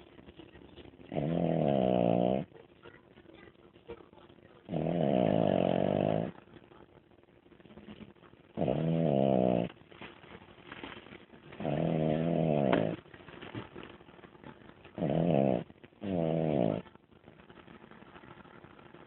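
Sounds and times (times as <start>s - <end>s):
dog snoring: 1.1s - 2.5s, 4.6s - 6.4s, 8.6s - 9.8s, 11.5s - 13.0s, 15.0s - 16.9s.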